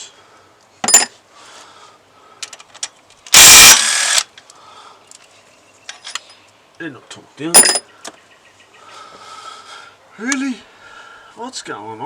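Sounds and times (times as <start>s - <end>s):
metallic clink of tools: 0.8s - 1.2s, 7.6s - 7.8s
impact wrench burst: 3.3s - 4.3s.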